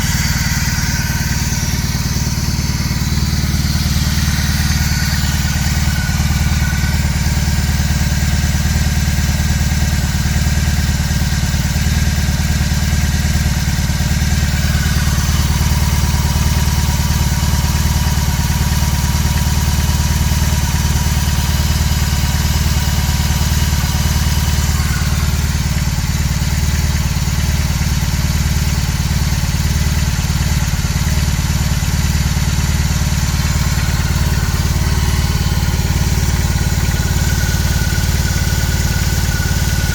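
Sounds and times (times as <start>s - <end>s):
motorcycle engine idling: 0.0s - 39.9s.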